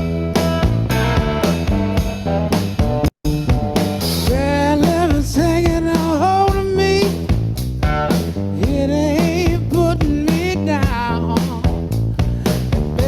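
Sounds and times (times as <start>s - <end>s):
blues-rock band playing: 0.0s - 13.0s
man singing with vibrato: 4.2s - 7.3s, 8.6s - 11.8s.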